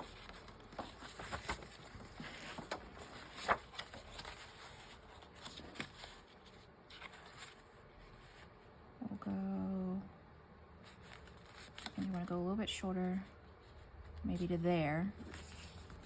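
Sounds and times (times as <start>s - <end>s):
paper rustling and tapping: 0.0s - 7.6s.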